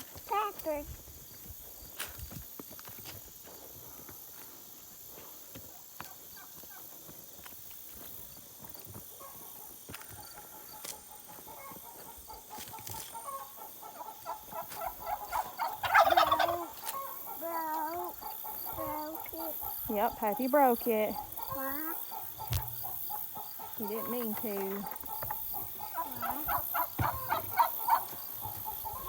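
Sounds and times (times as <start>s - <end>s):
domestic fowl calling: 9.1s - 29.0s.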